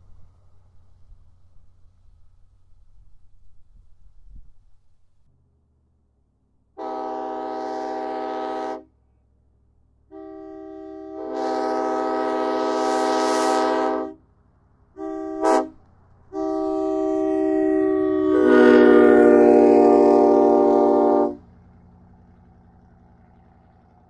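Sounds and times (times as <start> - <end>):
air train horn blasts: 6.8 - 9.0, 10.0 - 14.3, 14.9 - 21.5.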